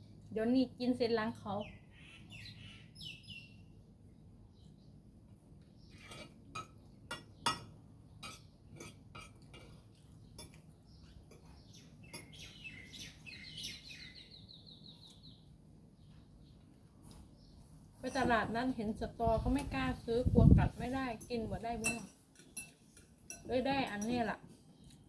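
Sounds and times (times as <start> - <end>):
bird twittering and trilling: 1.5 - 3.8, 10.2 - 16.6
cutlery clinking against plates: 5.9 - 10.7, 21.8 - 24.3.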